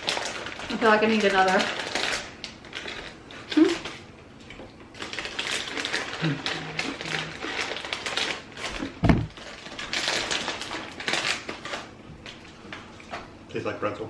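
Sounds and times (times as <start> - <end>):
crunching crisp snacks: 0.0 - 4.0, 5.0 - 11.9
dull thump: 9.0 - 9.3.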